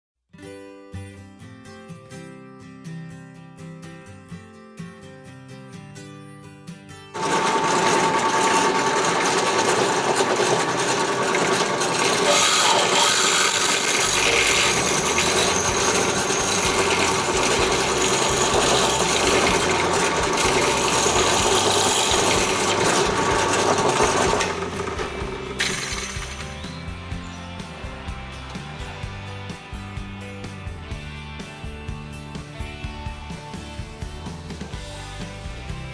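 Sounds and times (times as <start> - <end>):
wood chips rattling through machine: 7.2 - 27.0
chipper shredder engine running: 7.2 - 29.2.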